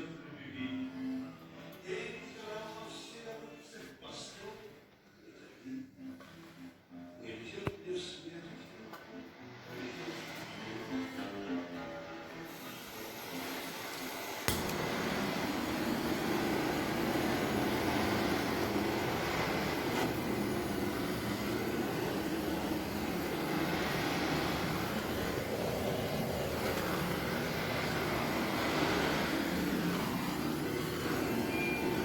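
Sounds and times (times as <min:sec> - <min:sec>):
electric power tool whirring: 0:12.6 - 0:32.0.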